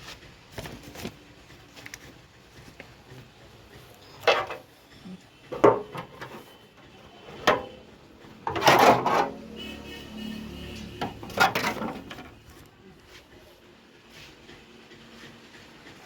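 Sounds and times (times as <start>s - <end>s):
hard objects knocking and scraping: 2.0s - 9.4s, 10.9s - 12.7s.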